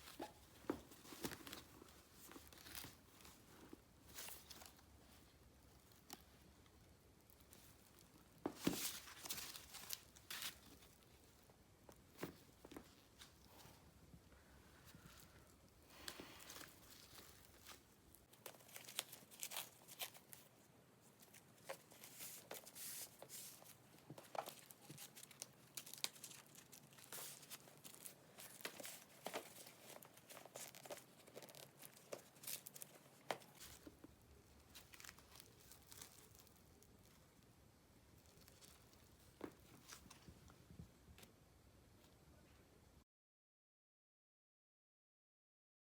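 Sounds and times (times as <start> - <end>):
handbag wrapping crinkling: 24.3 - 34.0, 34.7 - 36.6.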